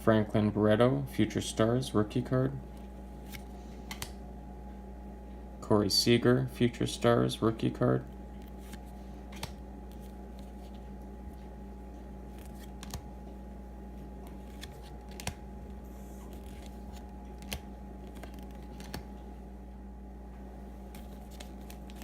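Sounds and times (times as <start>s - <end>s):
electrical hum: 0.0s - 22.0s
cards being flipped through: 2.7s - 4.2s, 8.2s - 13.3s, 14.2s - 19.2s, 20.8s - 22.0s.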